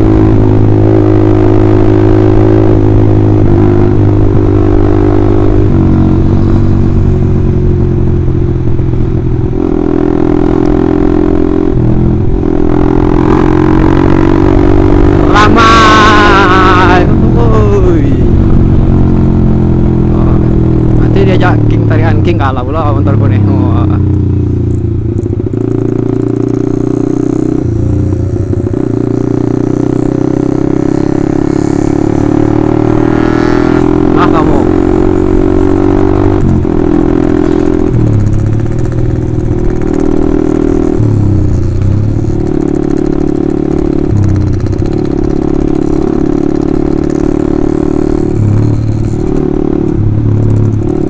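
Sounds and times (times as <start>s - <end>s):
loud motorcycle engine: 0.0s - 51.0s.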